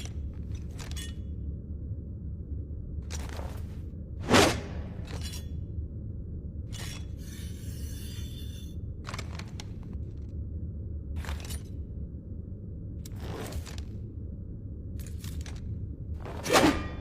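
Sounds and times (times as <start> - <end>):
steady low hum: 0.0 - 17.0
sword blade scraping metal: 6.8 - 8.8, 16.4 - 17.0.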